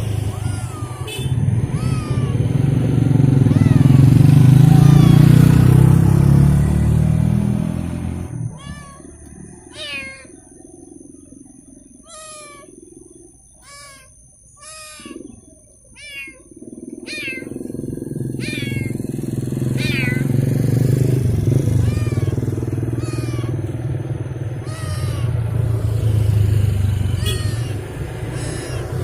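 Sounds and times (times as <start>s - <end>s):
kitten meowing: 0.0s - 2.7s, 3.4s - 5.5s, 8.5s - 10.4s, 12.0s - 12.9s, 13.6s - 17.6s, 18.3s - 19.1s, 19.7s - 20.4s, 21.6s - 23.8s, 24.6s - 25.8s, 27.0s - 29.0s
motorcycle engine rumble: 0.0s - 29.0s.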